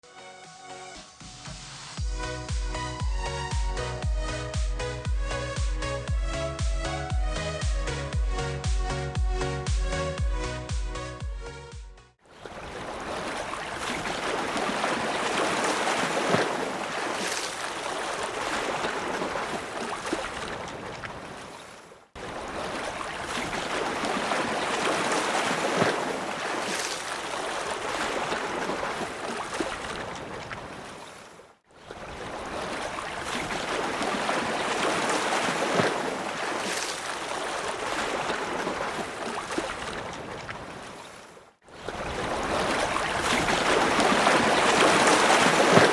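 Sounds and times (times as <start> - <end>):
rough sea waves surging: 12.3 - 45.9.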